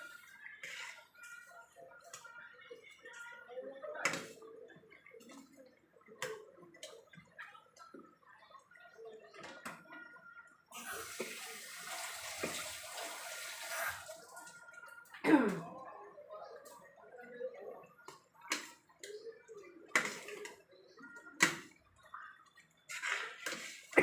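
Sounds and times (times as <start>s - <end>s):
tap water running: 10.8s - 14.2s.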